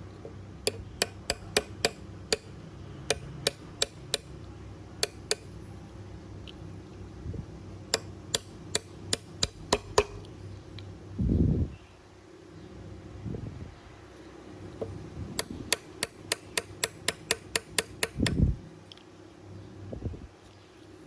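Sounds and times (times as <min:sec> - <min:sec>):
light hammer taps: 0:05.0 - 0:05.5.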